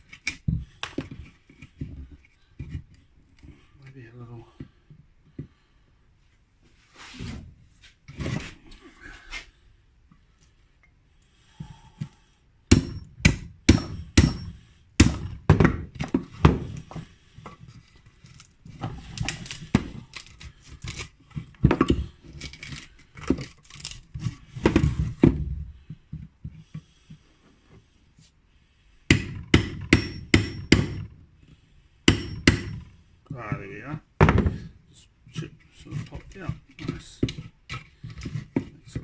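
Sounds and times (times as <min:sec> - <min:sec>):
hammer striking chisel on wood: 0:12.7 - 0:15.8, 0:29.1 - 0:31.1, 0:32.1 - 0:32.8.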